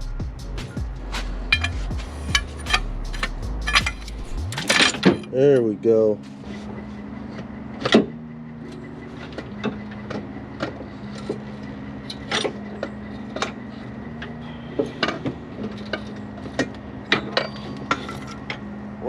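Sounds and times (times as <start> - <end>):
steady low hum: 0.0 - 19.0
tools and parts clicking and knocking: 1.5 - 5.4, 7.3 - 18.6.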